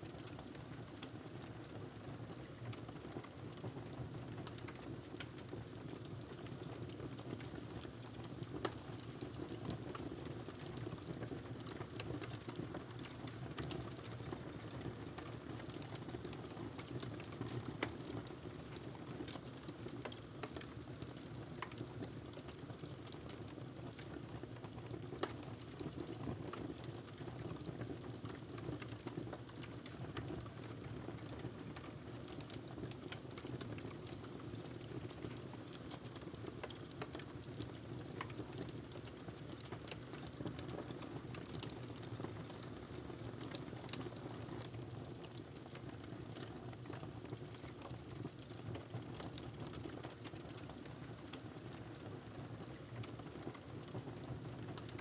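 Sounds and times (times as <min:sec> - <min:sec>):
wood fire crackling: 0:32.2 - 0:48.5.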